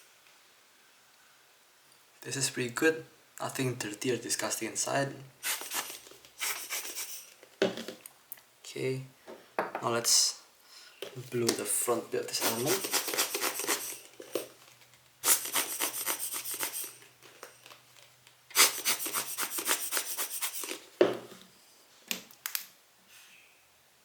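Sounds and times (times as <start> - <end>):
scratchy cleaning strokes on glass: 5.4 - 7.3, 12.4 - 14.0, 15.2 - 17.0, 18.6 - 20.8.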